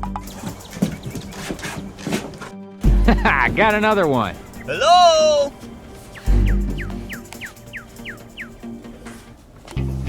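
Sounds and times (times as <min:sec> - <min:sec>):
deep bass hit: 0:02.8 - 0:03.6, 0:06.3 - 0:07.2.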